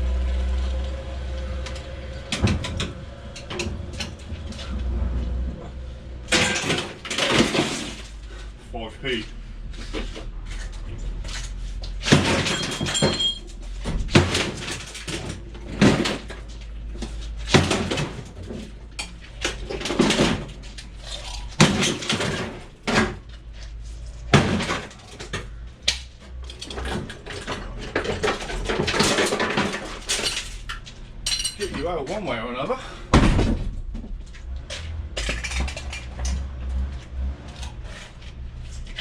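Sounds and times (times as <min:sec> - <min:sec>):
scrap metal knocks and clanks: 0:00.8 - 0:39.0.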